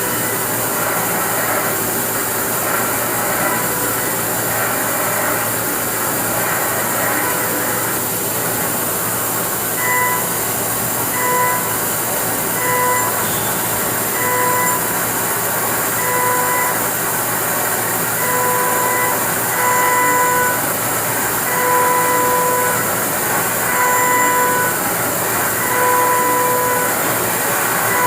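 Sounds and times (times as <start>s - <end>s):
milling machine cutting hiss: 0.0s - 28.0s
pitched machine tone: 0.0s - 28.0s.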